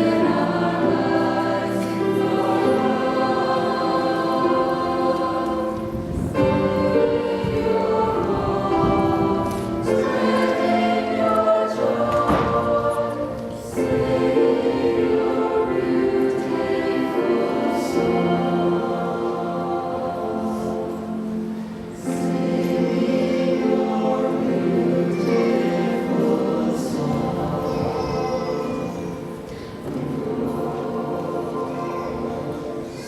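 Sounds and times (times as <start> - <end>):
church choir singing: 0.0 - 33.0.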